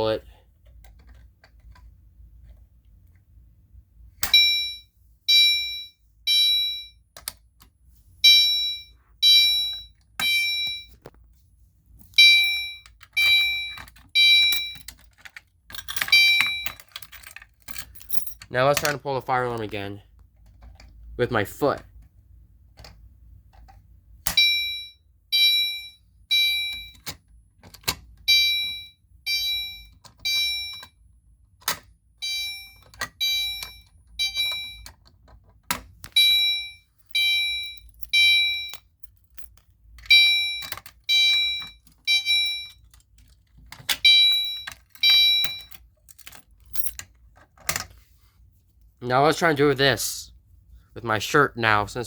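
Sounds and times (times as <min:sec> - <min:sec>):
fire alarm horn beeping: 0:04.3 - 0:07.0, 0:08.2 - 0:11.0, 0:24.4 - 0:27.0, 0:28.3 - 0:31.0, 0:32.2 - 0:34.9, 0:36.1 - 0:38.9, 0:40.1 - 0:42.8, 0:44.0 - 0:45.8.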